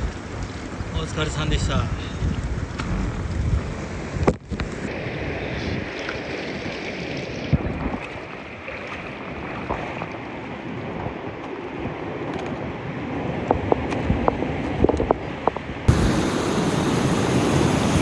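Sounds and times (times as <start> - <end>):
wind noise on microphone: 0.0 - 6.7, 7.5 - 8.1, 10.7 - 18.0
fast-flowing river rushing: 15.9 - 18.0.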